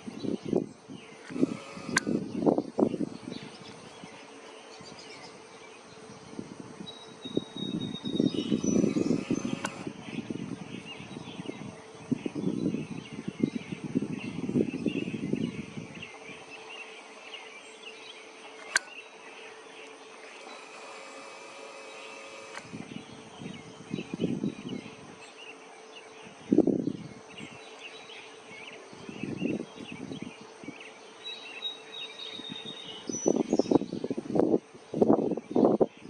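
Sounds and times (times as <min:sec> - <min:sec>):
small birds chirping: 0:00.0 - 0:36.0
sharp click: 0:01.2 - 0:02.6, 0:08.2 - 0:09.9, 0:18.4 - 0:19.2, 0:19.8 - 0:22.9.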